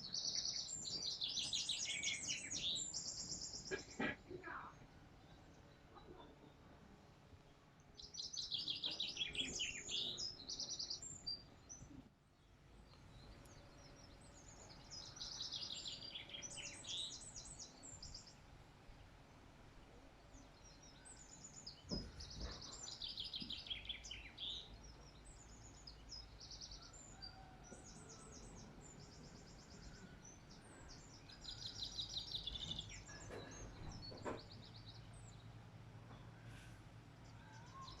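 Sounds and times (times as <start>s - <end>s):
songbirds chirping and singing: 0.0s - 38.0s.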